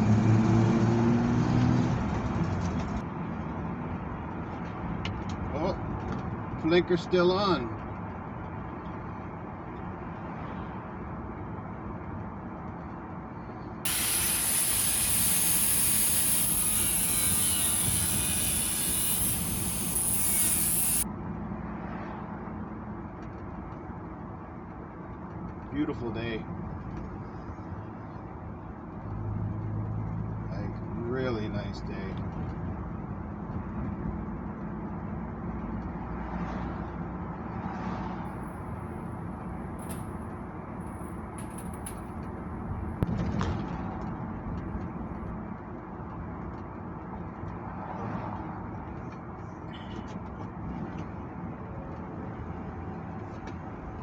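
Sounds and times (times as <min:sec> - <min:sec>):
road noise: 0:00.0 - 0:54.0
loud steady hiss: 0:13.9 - 0:21.0.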